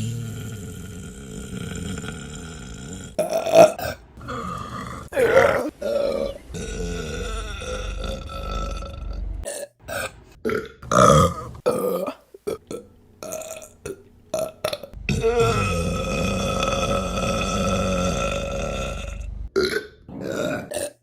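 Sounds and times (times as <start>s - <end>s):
women burping: 0.0s - 9.0s, 15.1s - 19.1s.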